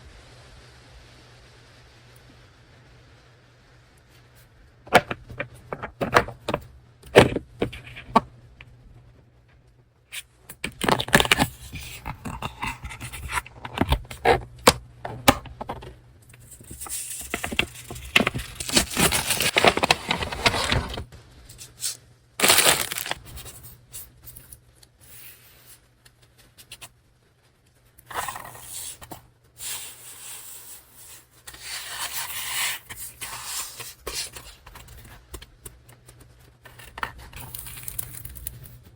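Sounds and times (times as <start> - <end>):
paper rustling and scraping: 16.4 - 23.8, 28.1 - 29.2, 31.4 - 35.3, 36.1 - 38.9.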